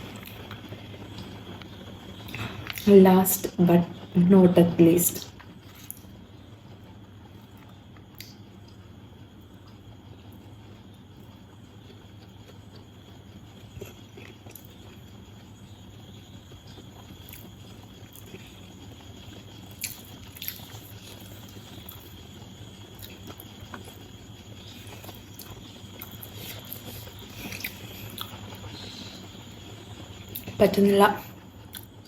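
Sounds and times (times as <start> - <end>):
steady low hum: 0.0 - 32.0
person chewing food: 11.2 - 15.4, 16.5 - 22.2, 22.9 - 30.5, 31.7 - 32.0.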